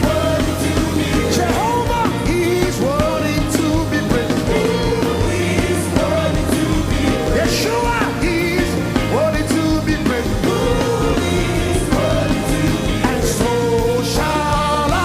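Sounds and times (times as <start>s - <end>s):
bass: 0.0s - 15.0s
gliding melodic lead line: 0.0s - 15.0s.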